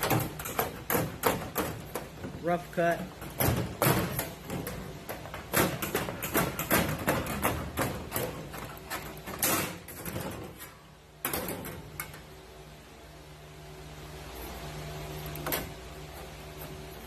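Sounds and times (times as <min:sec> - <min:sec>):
sheet metal cutting clicks and crunches: 0:03.2 - 0:12.2.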